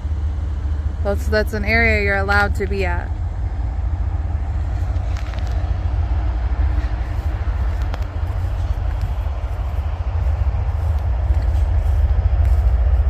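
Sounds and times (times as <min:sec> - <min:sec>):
freight train rumbling: 0:00.0 - 0:13.0
faint track clicks: 0:04.7 - 0:06.0, 0:06.7 - 0:13.0.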